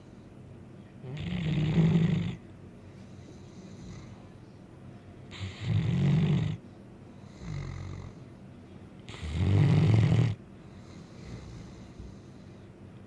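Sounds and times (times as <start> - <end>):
dog snoring: 1.0 - 2.4, 3.1 - 4.2, 5.3 - 6.6, 7.2 - 8.2, 9.1 - 12.6
dog breathing softly: 2.8 - 4.4, 10.6 - 12.8.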